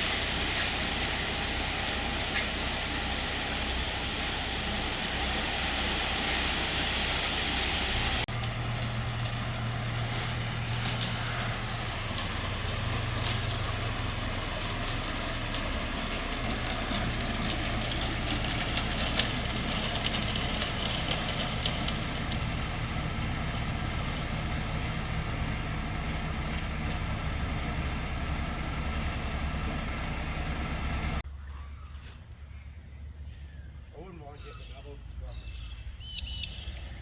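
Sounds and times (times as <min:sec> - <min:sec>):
earthmoving machine engine running: 0:00.0 - 0:31.2.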